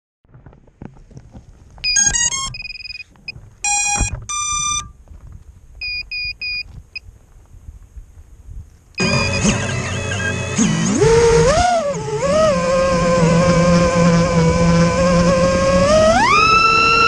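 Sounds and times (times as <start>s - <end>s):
handling noise: 0.3s - 8.0s
motor power-up beeps: 1.9s - 3.0s, 3.7s - 4.9s, 9.0s - 12.6s, 15.9s - 17.0s.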